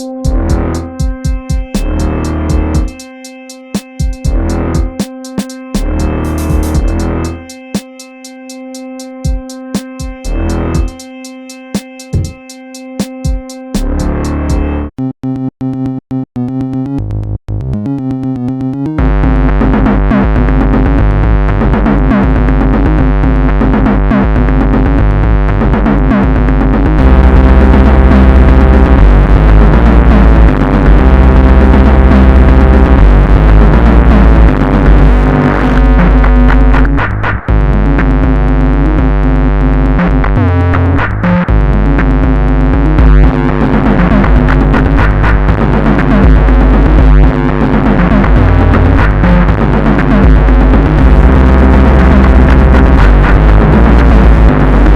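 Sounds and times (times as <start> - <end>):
synthesizer keyboard line: 0.0 - 19.8, 26.6 - 36.9, 41.5 - 54.9
bass and electronic backing: 0.0 - 54.9.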